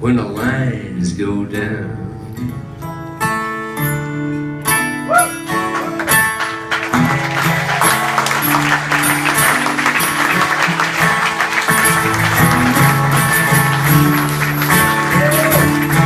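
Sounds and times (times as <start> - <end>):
guitar chords ringing out: 2.0 - 16.0
audience applause: 5.1 - 16.0.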